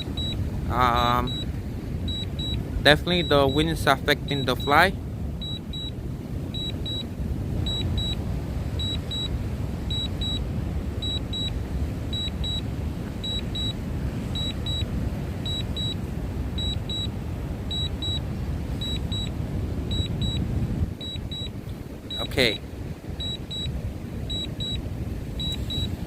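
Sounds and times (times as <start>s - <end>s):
short high alert beeps: 0.0s - 0.4s, 1.0s - 1.5s, 2.1s - 5.9s, 6.6s - 7.1s, 7.7s - 8.2s, 8.8s - 9.3s, 9.9s - 10.4s, 11.0s - 11.5s, 12.1s - 12.6s, 13.2s - 13.8s, 14.4s - 16.0s, 16.6s - 17.1s, 17.7s - 18.2s, 18.8s - 19.3s, 19.9s - 20.4s, 21.0s - 22.6s, 23.2s - 23.7s, 24.3s - 24.8s, 25.4s - 26.0s
wind rumble on microphone: 0.0s - 26.0s.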